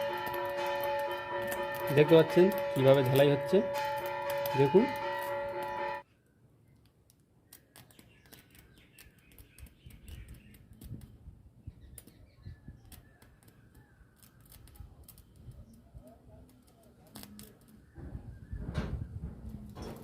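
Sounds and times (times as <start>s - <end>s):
carbon-arc welder crackling: 0.0s - 5.8s, 16.5s - 17.8s.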